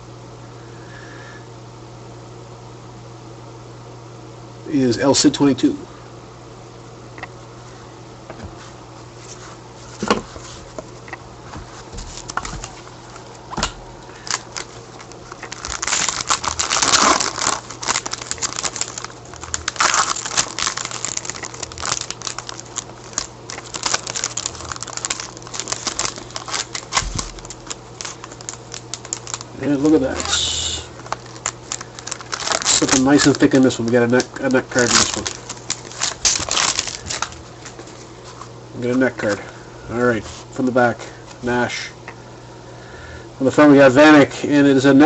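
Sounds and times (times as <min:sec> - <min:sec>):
cards being handled: 0:09.2 - 0:38.5
wrapper crinkling and tearing: 0:12.1 - 0:13.4, 0:14.0 - 0:38.5.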